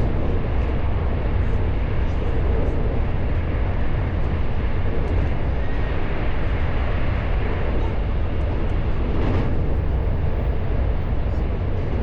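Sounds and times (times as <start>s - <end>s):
vehicle rumble: 0.0s - 12.0s.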